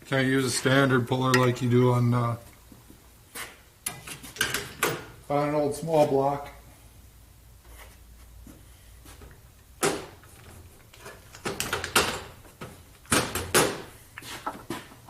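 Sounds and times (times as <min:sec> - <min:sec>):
metal tools clanking: 0:01.3 - 0:01.7.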